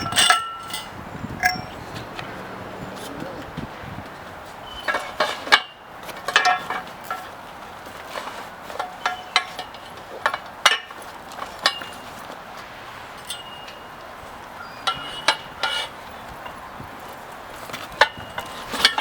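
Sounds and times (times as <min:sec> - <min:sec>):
metal parts clinking: 0:00.0 - 0:01.8, 0:04.8 - 0:07.3, 0:13.2 - 0:13.9, 0:14.6 - 0:16.6, 0:17.9 - 0:19.0.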